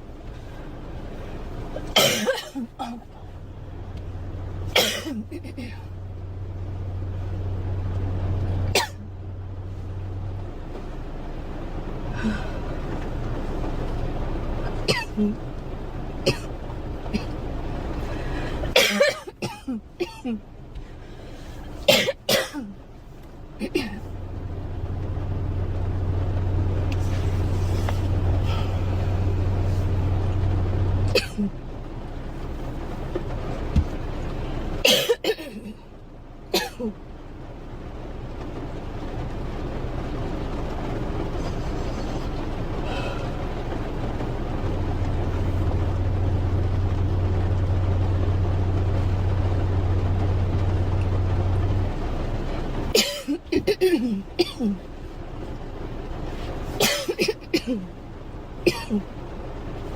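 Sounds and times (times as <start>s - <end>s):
low rumble with hum: 0.0s - 59.9s
girl coughing: 2.0s - 3.1s, 4.8s - 5.8s, 18.8s - 20.4s, 31.1s - 31.5s, 34.9s - 35.7s, 36.6s - 37.0s, 53.0s - 54.8s, 56.8s - 57.9s, 58.7s - 59.0s.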